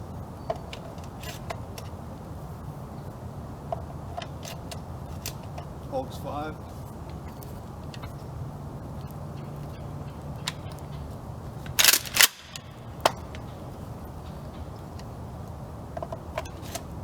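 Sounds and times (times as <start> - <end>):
shotgun cracks: 11.8 - 12.6.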